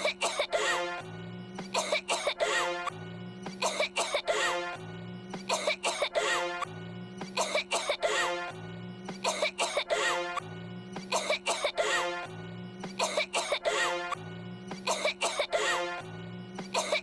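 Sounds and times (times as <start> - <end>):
person coughing: 0.0 - 0.7, 1.6 - 2.7, 3.5 - 4.5, 5.5 - 6.6, 7.3 - 8.3, 9.2 - 10.4, 11.0 - 12.0, 12.9 - 13.8, 14.8 - 15.7, 16.7 - 17.0.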